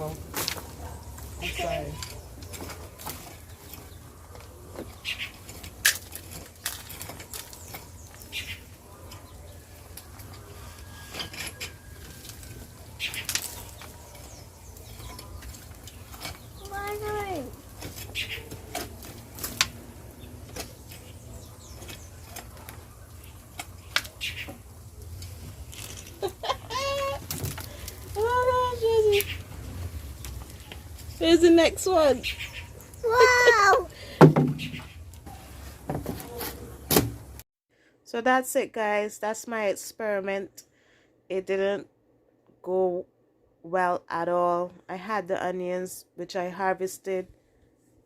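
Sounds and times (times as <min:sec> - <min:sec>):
digging scrapes and knocks in soil: 0:00.0 - 0:33.5
bird chirp: 0:00.8 - 0:05.4, 0:07.3 - 0:10.0, 0:12.8 - 0:17.4, 0:18.0 - 0:18.5, 0:20.1 - 0:24.6, 0:28.6 - 0:35.4.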